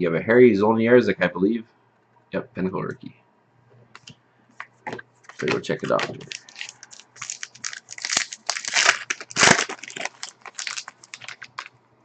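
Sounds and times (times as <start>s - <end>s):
plastic wrapper tearing and crinkling: 5.3s - 11.7s.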